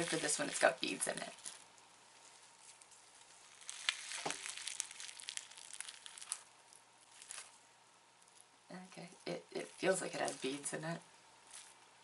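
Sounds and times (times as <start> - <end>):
slime crackling and popping: 2.6 - 7.6.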